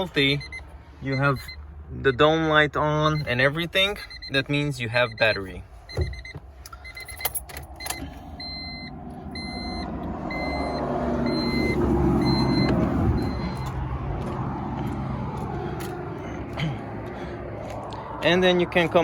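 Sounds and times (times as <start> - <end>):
car warning chime beeping: 0.0 - 13.8.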